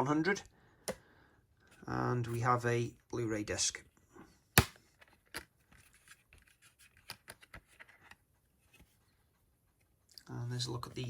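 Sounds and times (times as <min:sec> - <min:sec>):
plastic case clicking and rubbing: 0:04.6 - 0:08.9.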